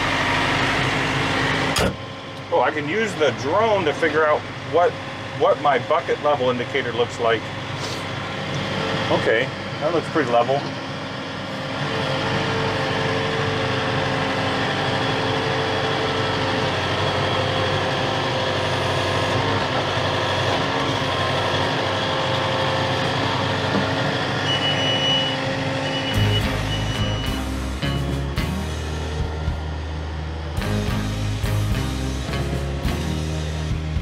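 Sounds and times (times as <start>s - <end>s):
tractor engine running: 0.0s - 34.0s
short high beeps: 24.5s - 27.4s
background music: 26.1s - 34.0s.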